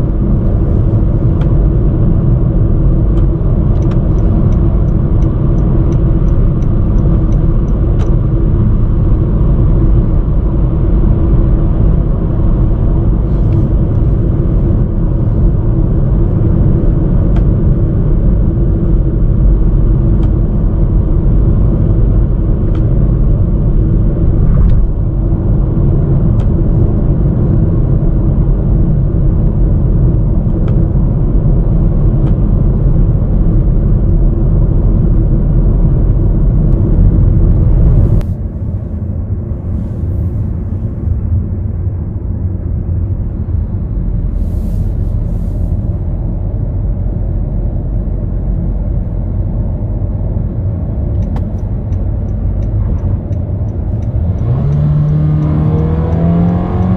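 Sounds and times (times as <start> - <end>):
car road and engine rumble: 0.0 - 56.9
light ticks: 3.1 - 8.2, 51.1 - 55.5.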